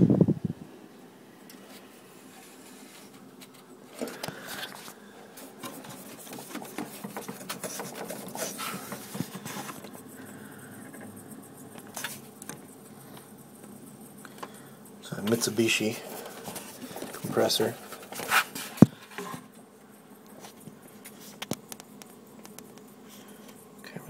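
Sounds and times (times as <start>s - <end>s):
faint steady background noise: 0.0s - 24.0s
small clicks scrapes and rubs: 1.5s - 10.1s, 10.8s - 14.6s, 16.1s - 19.5s, 20.2s - 23.8s.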